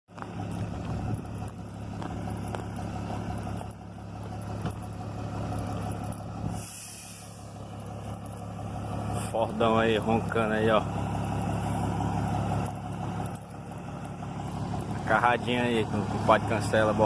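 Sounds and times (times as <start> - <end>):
truck engine idling: 0.1 - 17.0
brief hiss: 6.6 - 7.4.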